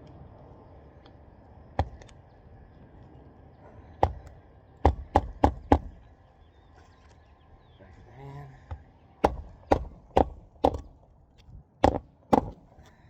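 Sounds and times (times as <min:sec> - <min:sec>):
hammer striking a nail: 0:04.0 - 0:06.0, 0:09.2 - 0:11.0, 0:11.8 - 0:12.7.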